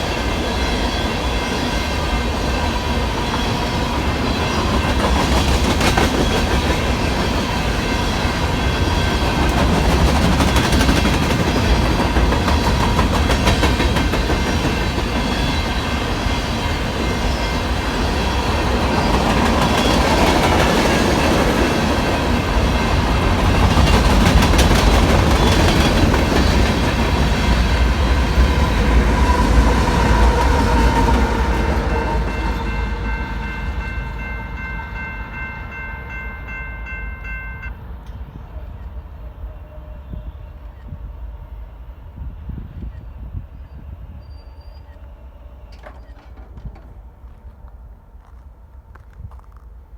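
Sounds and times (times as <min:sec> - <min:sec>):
train cars rumbling past: 0:00.0 - 0:49.0
crossing bell ringing: 0:14.0 - 0:27.6, 0:30.4 - 0:38.2.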